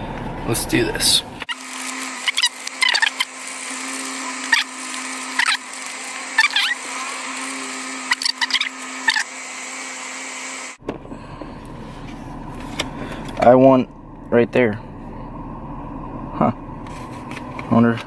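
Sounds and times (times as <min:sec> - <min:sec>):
coin scraping lottery ticket: 0:01.5 - 0:09.2
steady low hum: 0:10.8 - 0:18.0.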